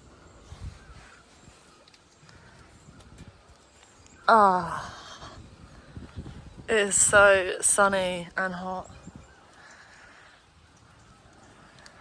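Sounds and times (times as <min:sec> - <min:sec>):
low outdoor hiss: 0:00.0 - 0:12.0.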